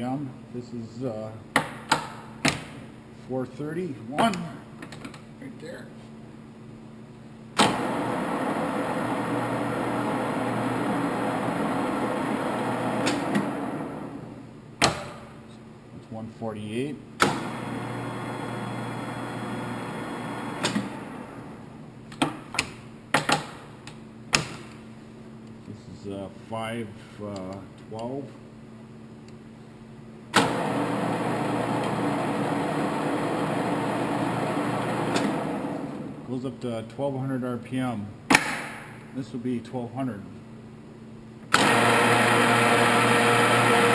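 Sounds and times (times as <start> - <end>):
drill press running: 7.6 - 14.5, 17.2 - 21.8, 30.3 - 36.3, 41.5 - 43.9
drill press clunk: 12.9 - 14.0, 30.3 - 32.1, 35.0 - 35.6, 41.5 - 41.9.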